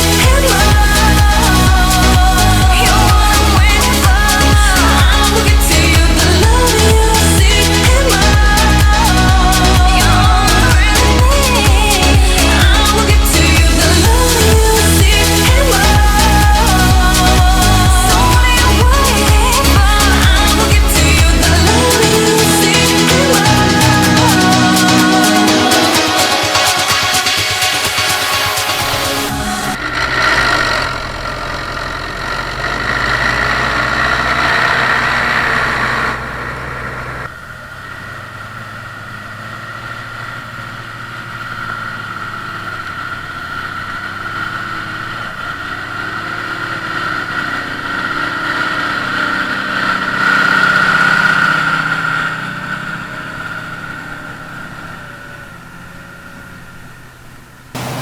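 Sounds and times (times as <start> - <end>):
high steady whine: 0.0 - 32.0, 57.8 - 58.0
diesel engine running: 0.0 - 58.0.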